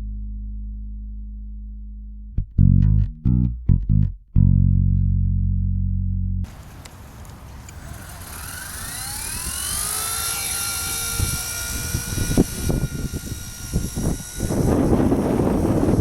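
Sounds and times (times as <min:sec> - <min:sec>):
toy helicopter motor whine: 0:06.5 - 0:16.0
wind buffeting microphone: 0:06.5 - 0:16.0.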